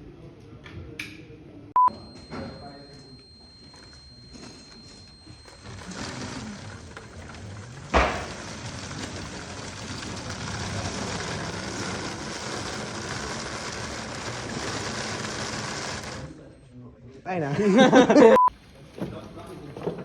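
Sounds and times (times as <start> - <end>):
steady rattling: 2.8 - 16.4.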